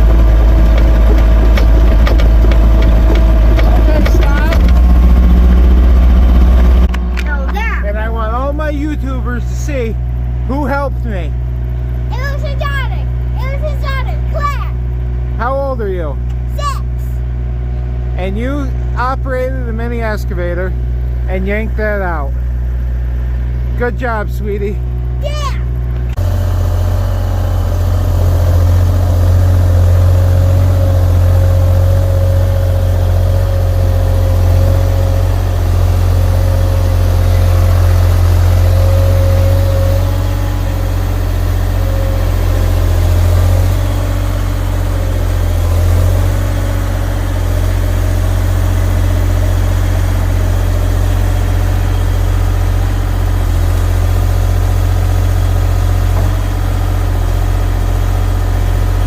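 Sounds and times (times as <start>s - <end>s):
heavy equipment engine idling: 0.0s - 59.0s.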